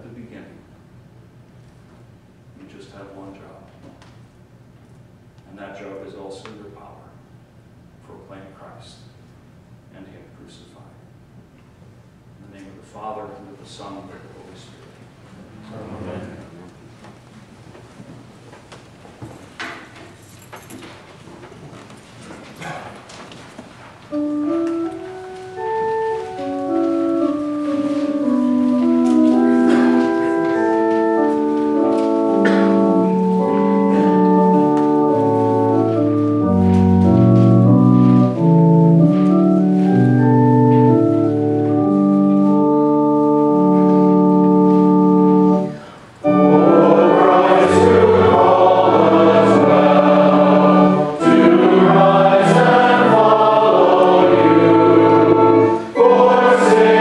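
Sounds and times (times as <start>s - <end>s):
church organ playing chords: 24.0s - 57.0s
congregation singing a hymn: 24.1s - 57.0s.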